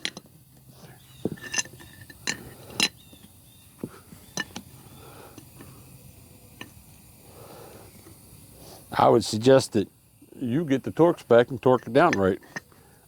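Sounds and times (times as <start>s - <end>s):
metal tools clinking: 1.2s - 3.0s, 11.7s - 12.7s.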